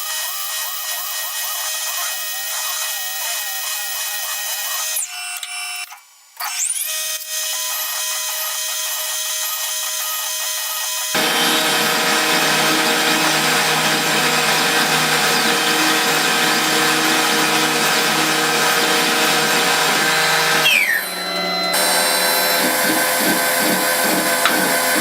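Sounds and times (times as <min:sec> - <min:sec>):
different steady machine: 0:11.2 - 0:25.0
machine tool whining: 0:11.2 - 0:25.0.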